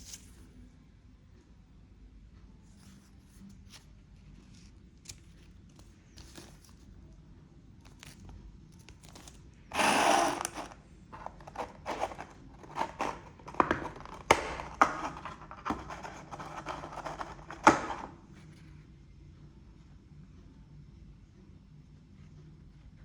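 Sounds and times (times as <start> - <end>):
packaging ripping: 8.8 - 18.1
packaging rustling: 8.8 - 18.1.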